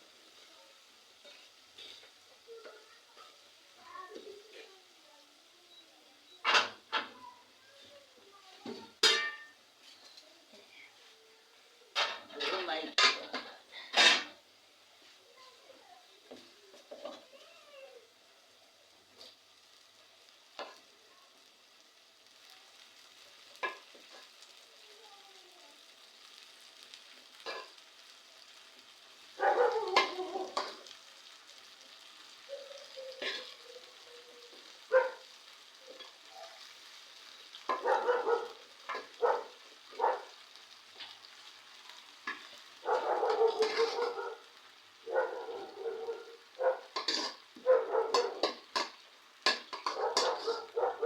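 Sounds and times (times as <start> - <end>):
vegetables sizzling in pot: 0.0 - 51.0
spoon scraping pot: 43.3 - 44.2, 47.0 - 47.4, 48.1 - 50.7.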